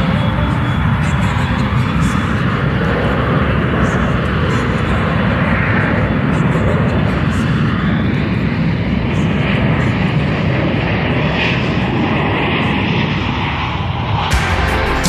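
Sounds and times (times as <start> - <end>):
loud rushing rumble: 14.0 - 15.0
music: 14.3 - 15.0.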